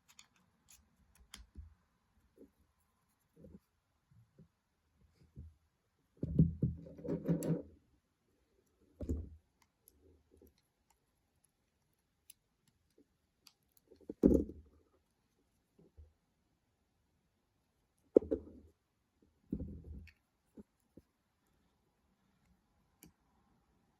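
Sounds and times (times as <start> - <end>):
plastic parts clicking and knocking: 0.0 - 1.8.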